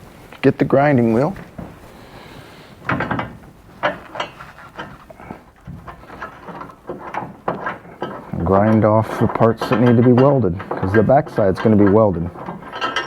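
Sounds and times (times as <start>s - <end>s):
metal tools clinking and knocking: 2.8s - 13.0s.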